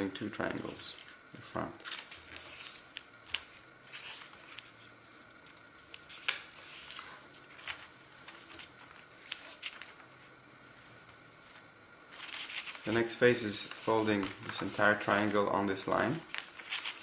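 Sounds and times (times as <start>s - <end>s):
paper being folded and creased: 1.8s - 4.8s, 6.0s - 10.2s, 12.1s - 17.0s.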